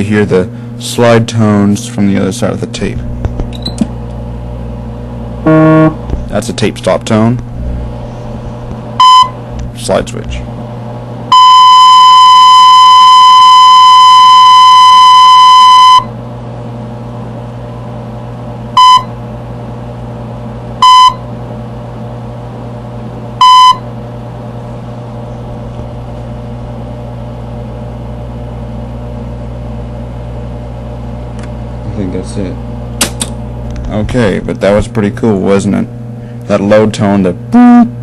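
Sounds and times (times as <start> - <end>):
steady low hum: 0.0 - 38.0
long high beep: 5.4 - 6.0, 9.0 - 9.4, 11.3 - 16.1, 18.8 - 19.1, 20.8 - 21.2, 23.4 - 23.8, 37.6 - 37.9
short beeps: 5.5 - 6.0, 9.0 - 9.4, 11.3 - 16.1, 18.8 - 19.1, 20.8 - 21.2, 23.4 - 23.8.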